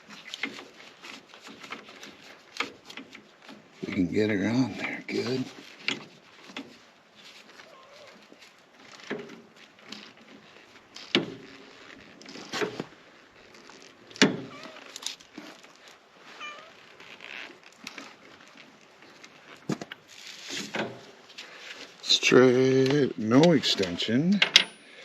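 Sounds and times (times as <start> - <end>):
cat meowing: 7.7 - 8.2, 16.4 - 16.8.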